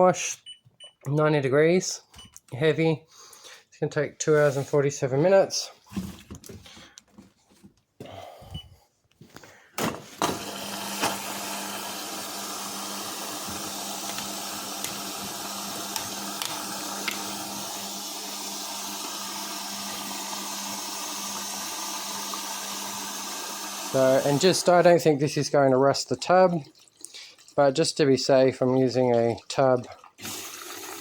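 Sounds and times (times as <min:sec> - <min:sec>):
washing machine humming: 0:10.2 - 0:24.8.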